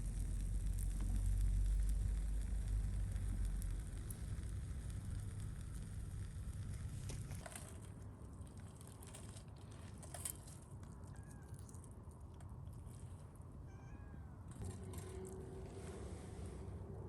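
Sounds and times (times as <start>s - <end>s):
cat meowing faintly: 11.0s - 11.7s, 13.6s - 14.6s.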